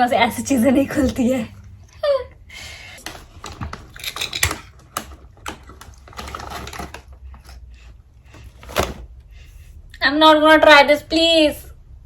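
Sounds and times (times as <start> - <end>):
drink container clicks and crinkles: 3.0 - 7.6.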